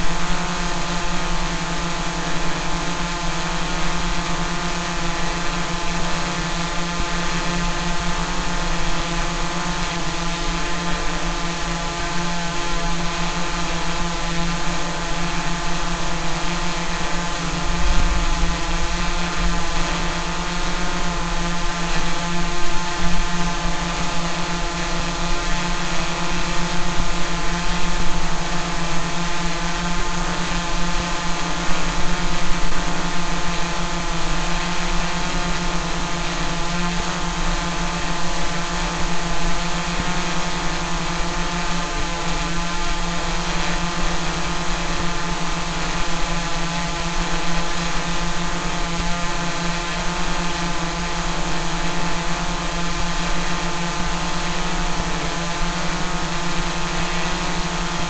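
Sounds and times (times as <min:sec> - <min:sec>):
drone propellers buzzing: 0:00.0 - 0:58.0.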